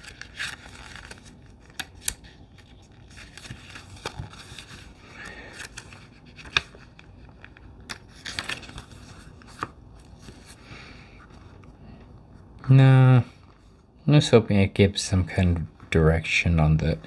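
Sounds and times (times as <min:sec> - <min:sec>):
paper pages rustling: 0:00.0 - 0:12.7.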